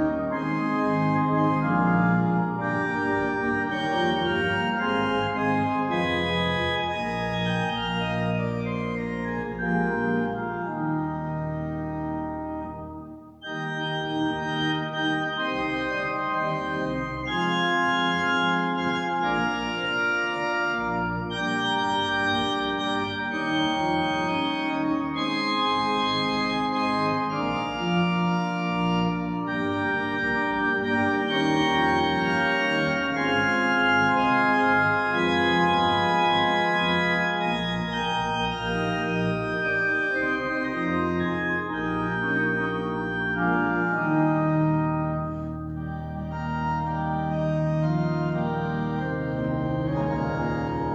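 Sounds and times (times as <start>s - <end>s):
church organ chords: 0.0s - 50.9s.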